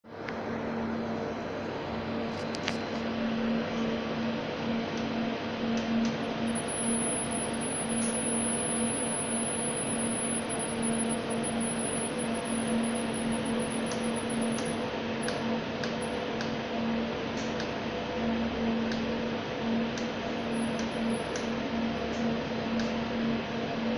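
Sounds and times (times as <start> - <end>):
electrical hum: 0.1 - 23.9
thin high-pitched whine: 6.1 - 15.4, 20.4 - 22.2.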